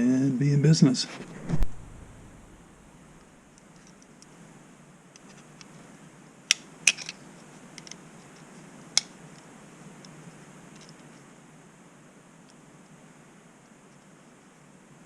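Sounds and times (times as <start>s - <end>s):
small parts clicking: 6.5s - 7.2s, 7.8s - 8.0s.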